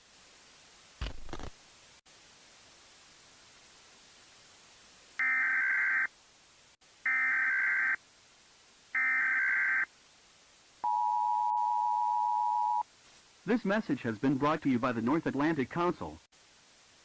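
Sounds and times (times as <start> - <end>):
two-tone attention signal: 10.8 - 12.8.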